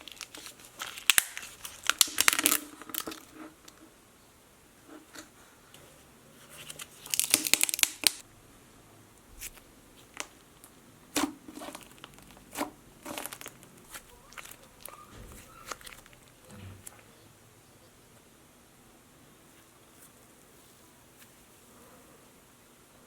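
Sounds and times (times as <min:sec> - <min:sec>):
crackling clicks and pops: 0:00.0 - 0:03.8, 0:06.8 - 0:08.2
slime squishing: 0:06.4 - 0:08.2, 0:09.4 - 0:17.1.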